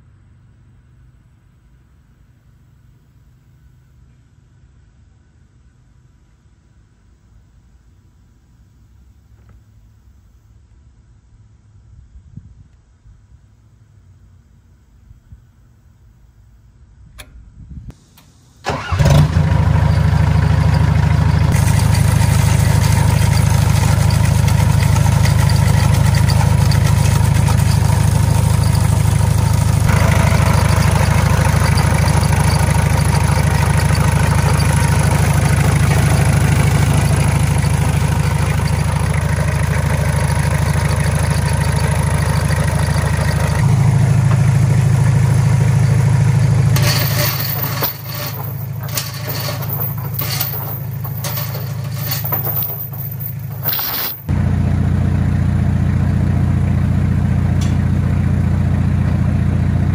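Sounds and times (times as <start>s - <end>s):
diesel engine starting and running: 17.2s - 59.9s.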